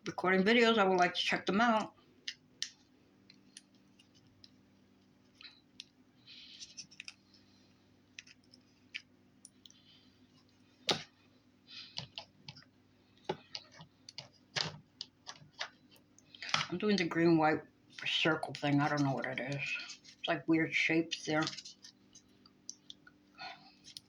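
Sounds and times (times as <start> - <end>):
plastic tools clicking and tapping: 13.2 - 16.8.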